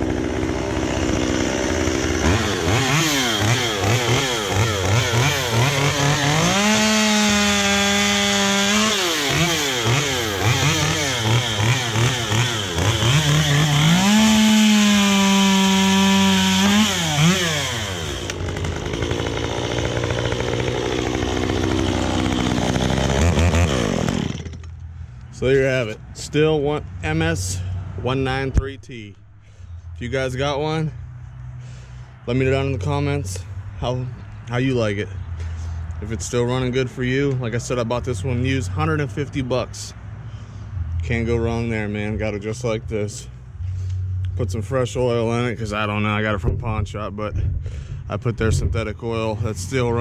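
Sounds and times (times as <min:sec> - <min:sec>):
chainsaw engine revving: 0:00.0 - 0:24.8.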